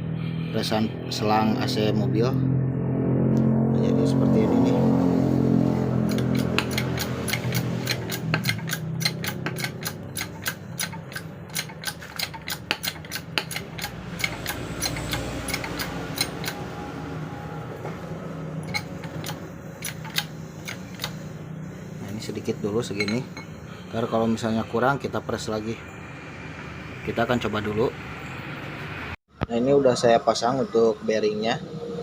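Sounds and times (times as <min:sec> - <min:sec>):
crimping press metallic clicks: 0:18.7 - 0:21.2.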